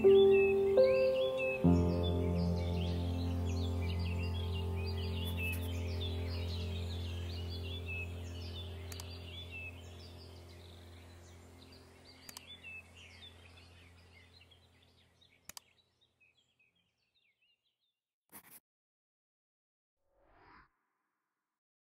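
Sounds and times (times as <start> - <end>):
sustained low ambient tones: 0.0 - 16.0
birds chirping: 0.0 - 17.9
faint clicks: 8.9 - 9.2, 12.2 - 12.6, 15.4 - 15.8.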